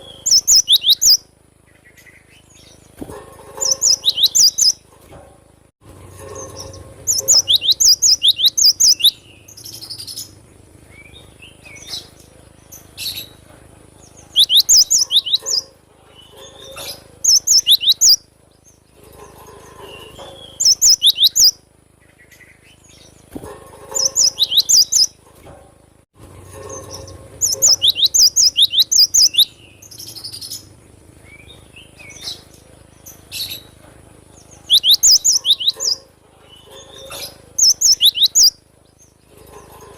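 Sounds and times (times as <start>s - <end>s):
bird singing sharp high notes: 0.0s - 1.3s, 3.6s - 4.8s, 6.4s - 10.3s, 14.3s - 16.6s, 17.2s - 18.2s, 20.0s - 21.6s, 24.0s - 25.1s, 27.4s - 30.6s, 34.6s - 36.0s, 37.6s - 38.6s
soft bird calls: 0.0s - 5.0s, 6.2s - 25.3s, 26.6s - 39.9s.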